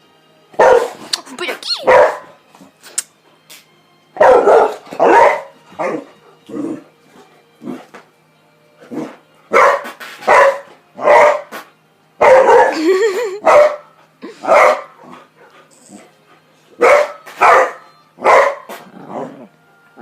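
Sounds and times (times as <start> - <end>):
dog barking: 0.6 - 1.0, 1.8 - 2.4, 4.2 - 6.1, 9.0 - 11.6, 12.2 - 12.8, 13.4 - 15.0, 16.8 - 18.8.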